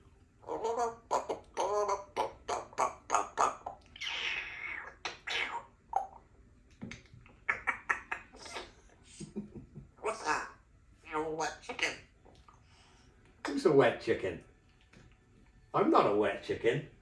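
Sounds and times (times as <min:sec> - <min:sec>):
parrot chattering and clicking: 0:00.5 - 0:06.2, 0:06.9 - 0:08.9, 0:10.0 - 0:12.1.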